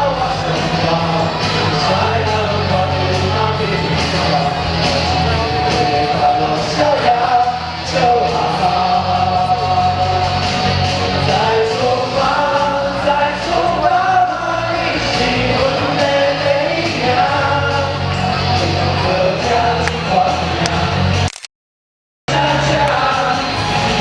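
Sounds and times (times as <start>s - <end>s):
loud musical accompaniment: 0.0s - 21.3s, 22.3s - 24.0s
choir singing: 22.3s - 24.0s.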